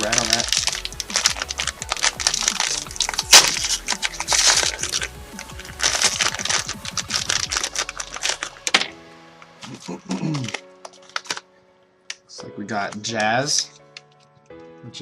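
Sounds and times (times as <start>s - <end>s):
plastic bag crinkling: 0.0s - 11.5s
background music: 0.0s - 15.0s.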